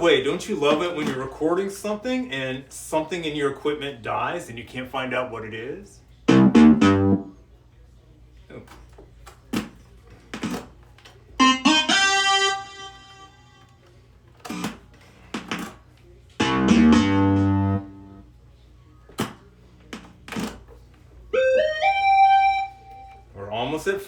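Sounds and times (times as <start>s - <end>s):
deep synth bass tone: 6.3s - 7.3s, 16.4s - 18.2s
synth note stepping up in pitch: 6.3s - 7.3s, 16.4s - 18.2s
bright synth note: 6.3s - 7.4s, 16.4s - 18.2s, 21.4s - 23.3s.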